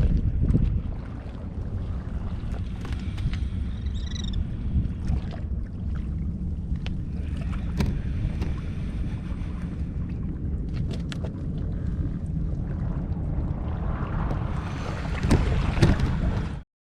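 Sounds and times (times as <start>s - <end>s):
sea water sloshing: 0.0s - 16.6s
wind rumbling on microphone: 0.0s - 16.6s
gull call: 3.8s - 4.5s
small knocks and splashes: 15.1s - 16.5s.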